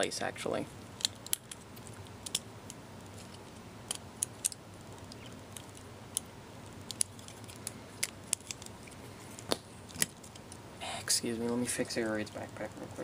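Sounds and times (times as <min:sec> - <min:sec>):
faint steady hiss: 0:00.0 - 0:13.0
plastic toy parts clicking: 0:01.0 - 0:01.6, 0:02.2 - 0:02.4.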